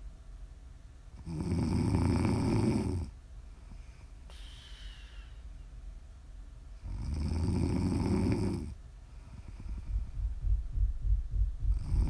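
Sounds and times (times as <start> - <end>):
woman breathing in sleep: 3.7 - 5.5.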